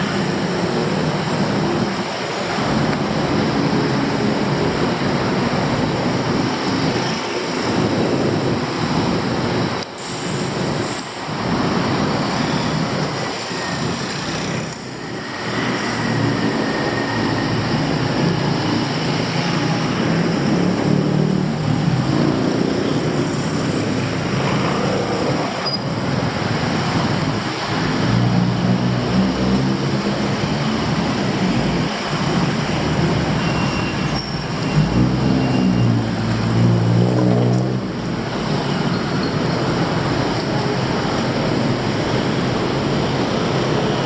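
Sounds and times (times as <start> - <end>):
street traffic noise: 0.0 - 44.0
vehicle engines passing: 10.6 - 44.0.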